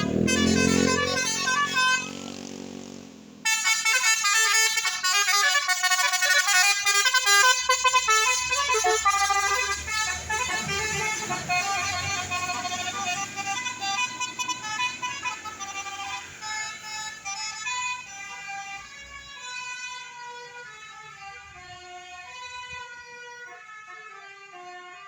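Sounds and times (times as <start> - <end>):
bus musical air horn tune: 0.0 - 2.5, 3.4 - 25.0
bus engine rumble: 0.0 - 19.3.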